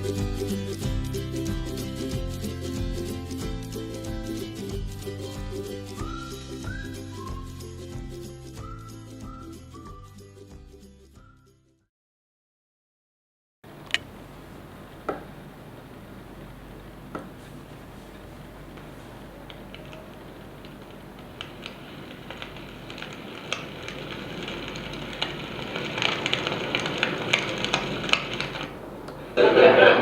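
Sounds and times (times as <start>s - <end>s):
white noise hiss: 13.7s - 30.0s
clicks and crackles: 13.8s - 29.4s.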